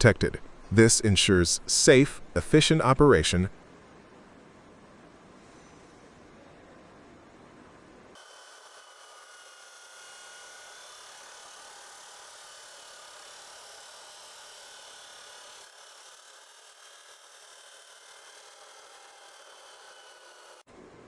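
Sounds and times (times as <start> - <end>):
high-pitched machine hiss: 8.2 - 20.6.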